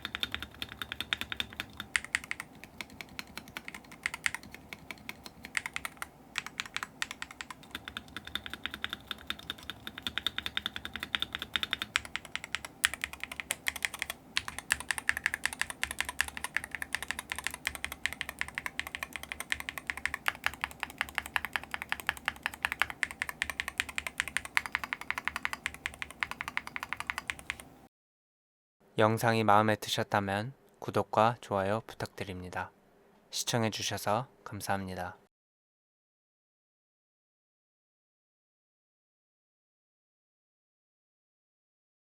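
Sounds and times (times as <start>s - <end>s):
fast keyboard typing: 0.0s - 27.8s.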